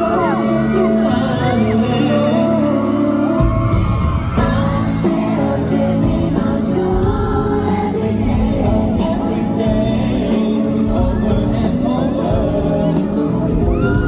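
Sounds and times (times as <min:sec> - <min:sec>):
live band playing: 0:00.0 - 0:14.0
man singing lead vocal: 0:00.0 - 0:14.0.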